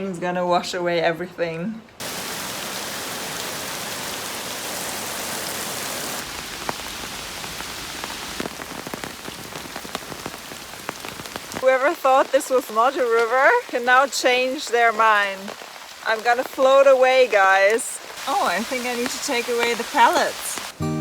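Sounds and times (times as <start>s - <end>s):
heavy rain falling: 2.0s - 20.8s
single raindrops ticking: 6.2s - 20.8s.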